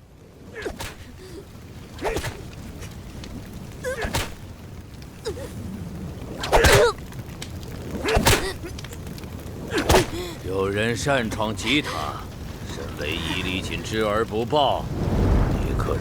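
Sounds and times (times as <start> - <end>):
sharp blows: 0.5 - 4.6, 6.3 - 7.0, 9.6 - 10.4.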